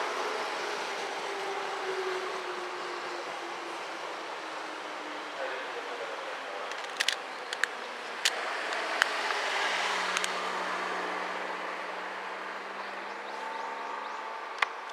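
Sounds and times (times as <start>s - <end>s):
sharp clicks: 6.7s - 9.5s
electric train wheels on rail: 6.7s - 10.4s.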